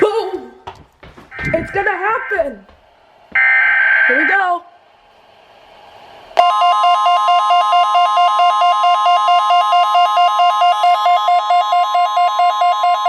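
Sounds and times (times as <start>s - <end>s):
steady high alarm tone: 1.3s - 2.7s, 3.3s - 13.0s
rapidly pulsing alert beep: 6.4s - 13.0s.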